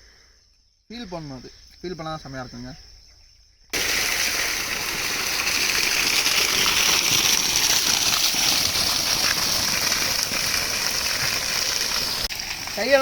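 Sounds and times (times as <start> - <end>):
water gushing: 3.8 - 13.0.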